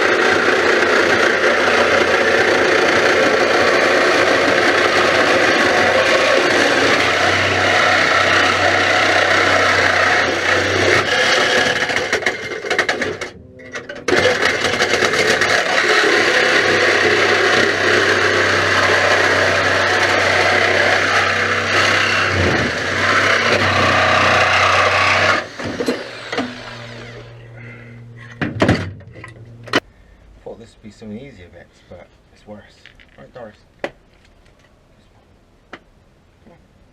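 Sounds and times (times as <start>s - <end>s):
reciprocating saw cutting sheet metal: 0.0s - 28.2s.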